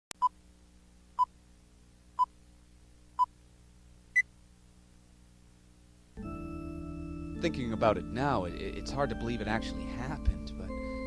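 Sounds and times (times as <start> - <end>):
faint steady hum: 0.2 - 6.2.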